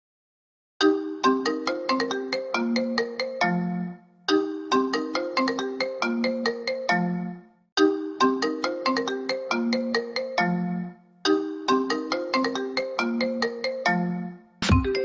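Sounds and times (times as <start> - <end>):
phone ringtone melody: 0.8 - 15.0.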